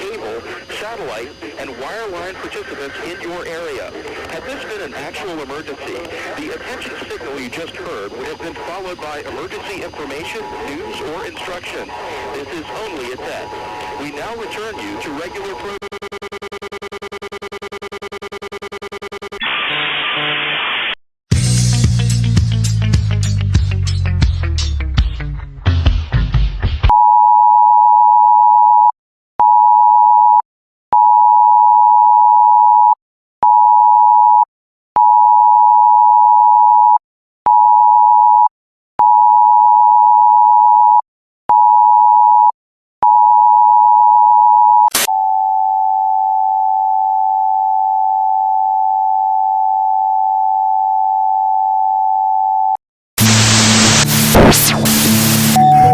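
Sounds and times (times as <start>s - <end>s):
burst of static: 0.0s - 16.3s, 19.2s - 21.0s, 53.2s - 55.9s
steady two-tone signal: 0.0s - 20.9s, 53.2s - 55.9s
two-tone alert beeps: 54.1s - 55.9s.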